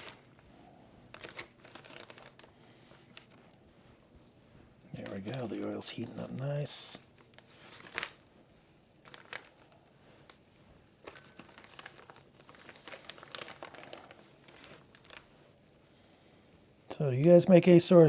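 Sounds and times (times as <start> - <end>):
plastic packaging crinkling: 0.0 - 0.4, 1.0 - 17.8.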